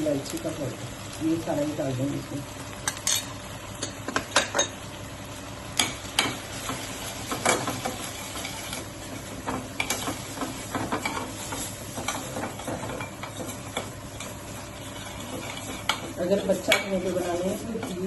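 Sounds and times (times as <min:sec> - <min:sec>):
faint sizzle: 0:00.0 - 0:18.0
spoon clinking and scraping pan: 0:05.8 - 0:18.0.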